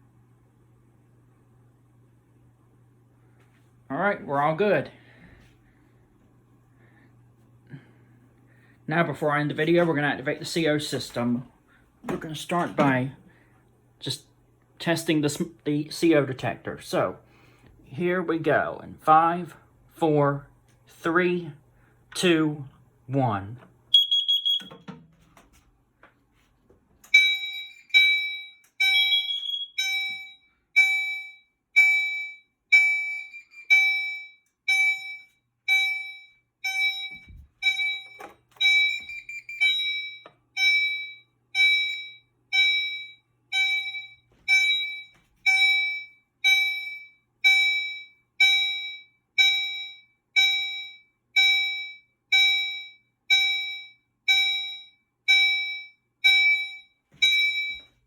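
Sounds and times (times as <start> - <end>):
alarm chime pulsing: 27.1 - 58.0.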